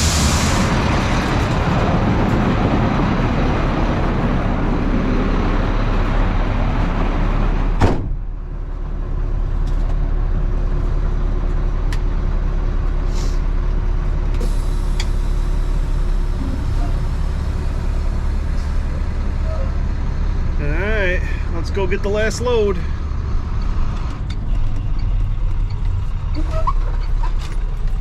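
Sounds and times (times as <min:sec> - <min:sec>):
vehicle engine running: 0:00.0 - 0:28.0
door shutting thump: 0:07.8 - 0:08.2.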